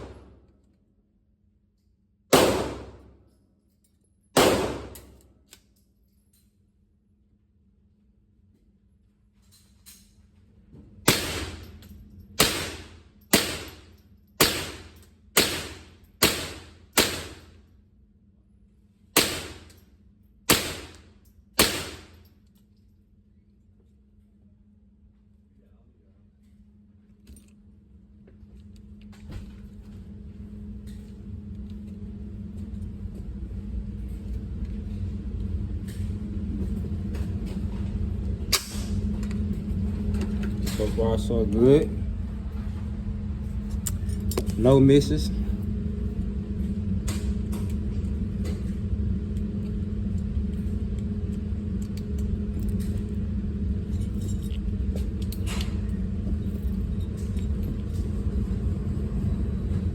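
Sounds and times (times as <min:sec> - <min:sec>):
gunshots echoing: 0:00.0 - 0:00.3, 0:02.3 - 0:03.1, 0:04.4 - 0:05.1, 0:11.1 - 0:11.6, 0:12.4 - 0:13.8, 0:14.4 - 0:17.4, 0:19.2 - 0:19.7, 0:20.5 - 0:21.0, 0:21.6 - 0:22.1
low mechanical rumble with hum: 0:00.0 - 0:59.9.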